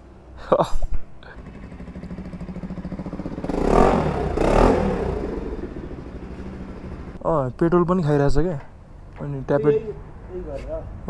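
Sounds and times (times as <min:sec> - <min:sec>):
motorcycle engine revving: 0:01.3 - 0:07.2.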